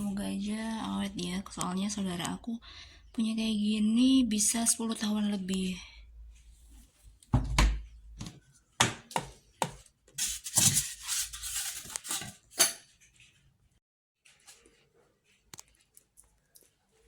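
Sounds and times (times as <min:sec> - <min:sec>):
objects knocking and clattering: 0:07.3 - 0:11.0.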